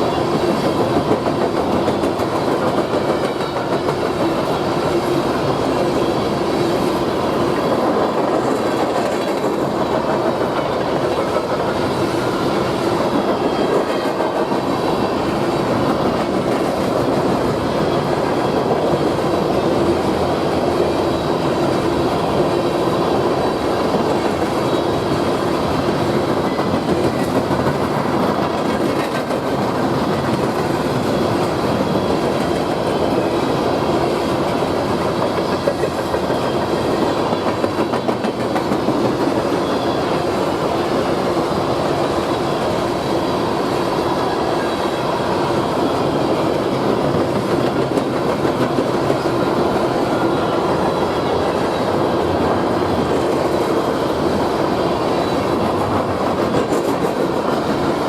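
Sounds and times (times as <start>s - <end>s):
train cars rolling past: 0.0s - 58.0s.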